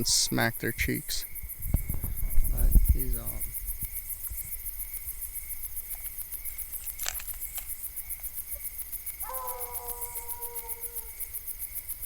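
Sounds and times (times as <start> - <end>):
crickets and insects trilling: 0.0 - 12.0
long steady-pitched call: 9.2 - 11.4.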